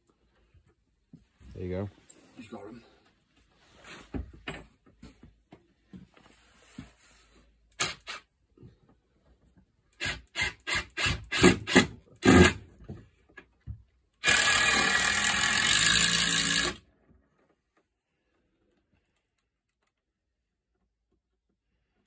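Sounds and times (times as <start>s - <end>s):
power tool running: 14.2s - 16.8s.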